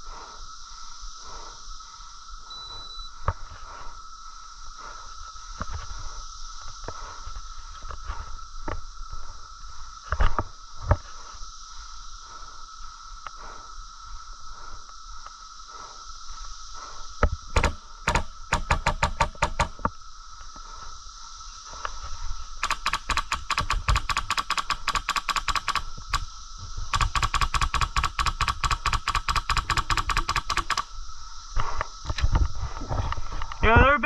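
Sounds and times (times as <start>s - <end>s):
airsoft gun firing: 17.6s - 19.7s, 26.9s - 30.8s.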